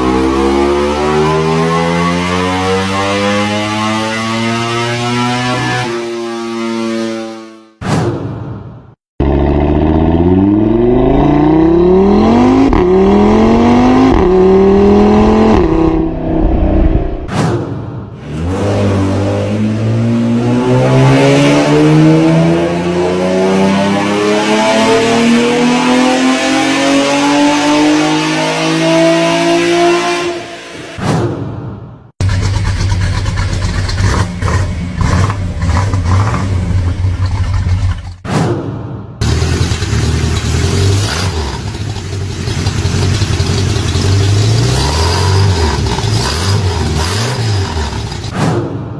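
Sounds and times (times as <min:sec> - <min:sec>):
car engine accelerating: 0:00.0 - 0:06.6, 0:09.2 - 0:17.3, 0:18.2 - 0:30.7, 0:32.2 - 0:38.2, 0:39.2 - 0:48.3
car engine dying away: 0:32.2 - 0:38.2, 0:39.2 - 0:48.3.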